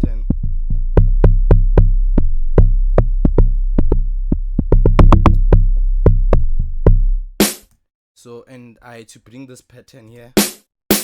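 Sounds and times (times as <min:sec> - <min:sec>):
deep sustained bass: 0:00.0 - 0:07.4
drum machine hits: 0:00.0 - 0:07.7, 0:10.4 - 0:11.0.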